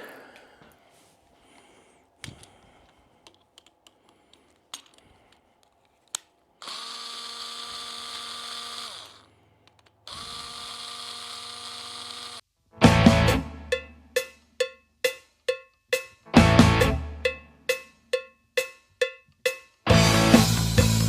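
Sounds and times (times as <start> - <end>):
handling clicks and taps: 2.2 - 6.4, 9.6 - 10.0
cordless screwdriver whine: 6.6 - 12.4.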